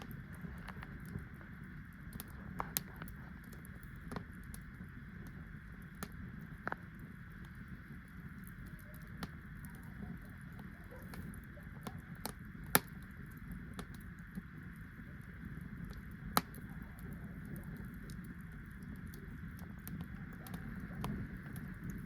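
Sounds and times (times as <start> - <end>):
sharp fire pops: 0.0 - 4.6, 12.2 - 13.1, 15.4 - 22.0
low background rumble: 0.0 - 22.0
wood fire crackling: 0.0 - 22.0.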